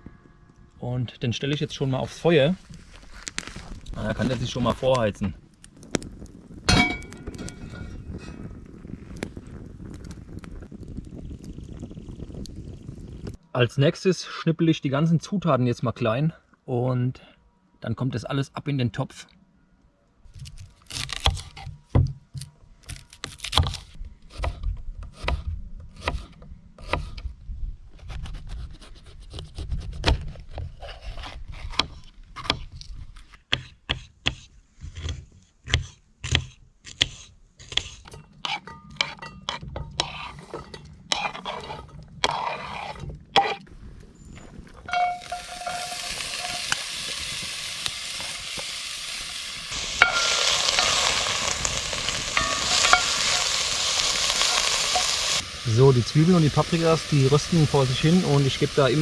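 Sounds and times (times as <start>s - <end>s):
vegetables sizzling in pot: 44.9s - 59.0s.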